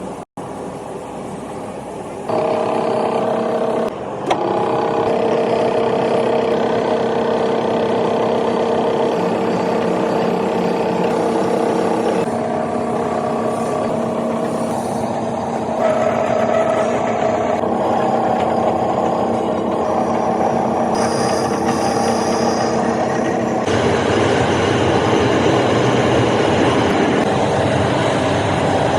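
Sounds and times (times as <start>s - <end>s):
lathe machine whine: 0.0s - 28.9s.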